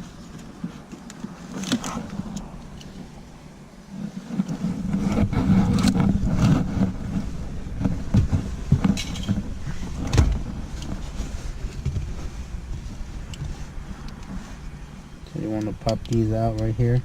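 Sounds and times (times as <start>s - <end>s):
low rumble: 0.0s - 17.0s
hard plastic parts clicking: 15.6s - 16.8s.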